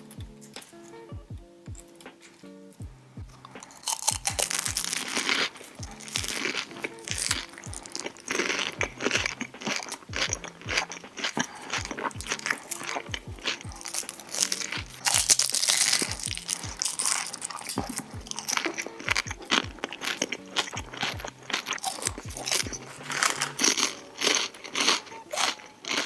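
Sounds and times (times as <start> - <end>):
background music with bass beat: 0.0 - 26.0
crunching and chewing food: 1.7 - 26.0.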